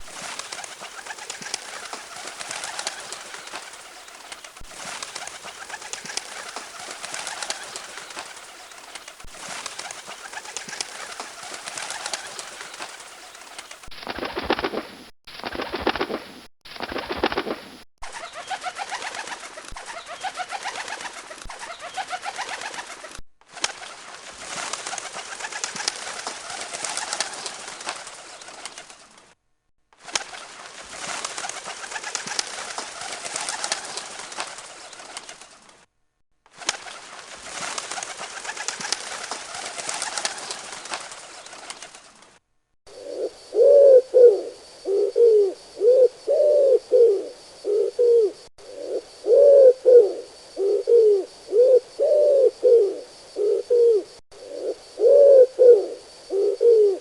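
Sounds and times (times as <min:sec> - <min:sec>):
hissy background: 0:00.0 - 0:17.8, 0:36.6 - 0:57.0
pigeons cooing: 0:00.0 - 0:17.8, 0:42.9 - 0:57.0
loud low pigeon coos: 0:42.9 - 0:57.0.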